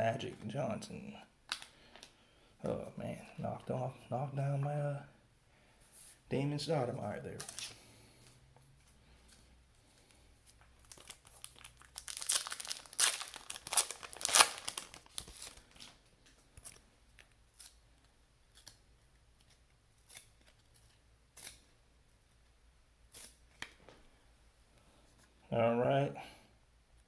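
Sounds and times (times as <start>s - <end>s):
card pack wrapper crinkling: 1.5s - 2.1s, 10.7s - 17.8s
cards rustling and tapping: 7.4s - 21.7s.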